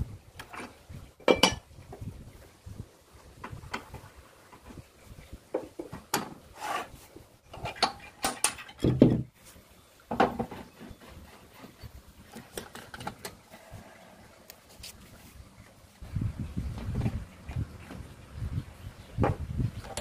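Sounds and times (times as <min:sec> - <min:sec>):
wooden pieces knocking and scraping: 0:07.5 - 0:09.3.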